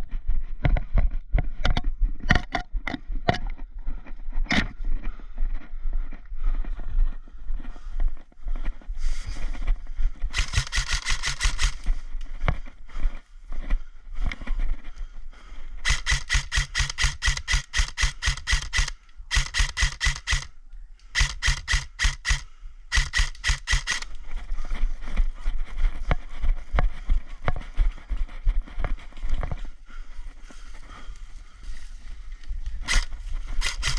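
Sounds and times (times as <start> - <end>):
airsoft gun firing full auto: 10.4 - 11.8, 15.8 - 20.5, 21.2 - 24.0, 32.9 - 33.9.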